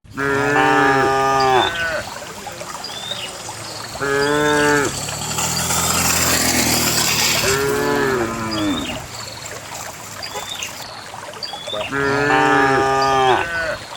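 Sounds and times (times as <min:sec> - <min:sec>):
cows mooing: 0:00.1 - 0:02.2, 0:03.9 - 0:09.2, 0:11.9 - 0:13.9.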